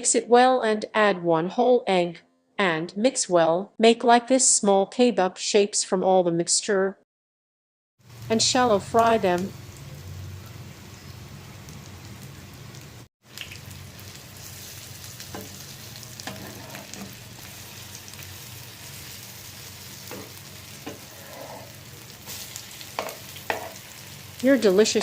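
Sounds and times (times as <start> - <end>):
food sizzling in frying oil: 8.0 - 25.0.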